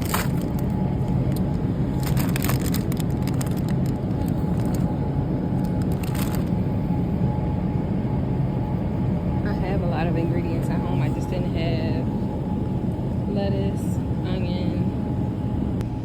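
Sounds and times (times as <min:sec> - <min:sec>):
plastic bag crinkling: 0:00.0 - 0:00.7, 0:01.3 - 0:04.9, 0:05.6 - 0:06.5
low background rumble: 0:00.0 - 0:16.0.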